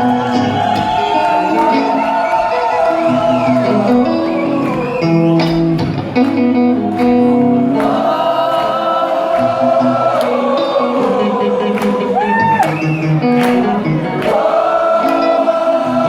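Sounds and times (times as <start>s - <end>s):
live band music: 0.0s - 8.0s
crowd singing together: 0.0s - 16.0s.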